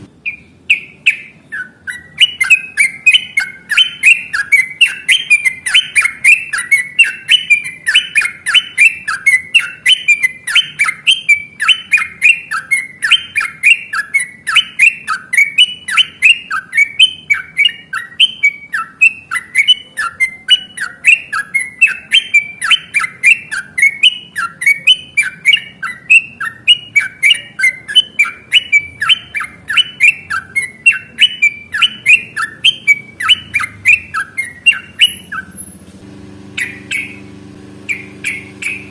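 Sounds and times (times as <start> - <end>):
bird chattering song: 0.0 - 35.8, 36.5 - 37.3, 37.9 - 38.9.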